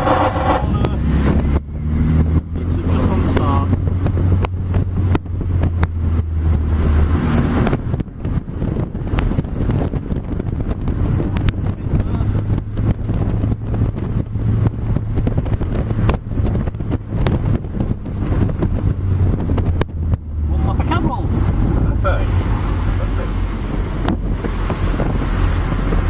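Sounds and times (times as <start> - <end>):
sharp knocks and rattles: 0.0 - 0.7
wind and road noise: 0.0 - 26.0.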